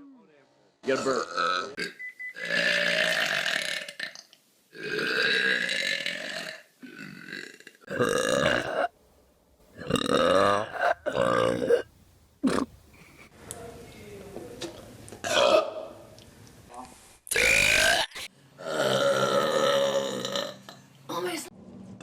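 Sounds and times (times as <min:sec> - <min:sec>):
person burping loudly: 0:00.9 - 0:08.9, 0:09.7 - 0:13.2, 0:15.2 - 0:15.8, 0:17.3 - 0:20.8.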